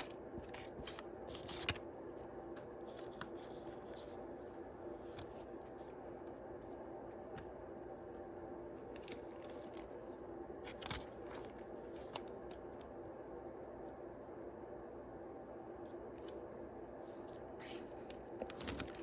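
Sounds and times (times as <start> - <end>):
wrappers and cards rustling: 0.0 - 4.2, 8.8 - 12.8, 17.1 - 19.0
steady low hum: 0.0 - 19.0.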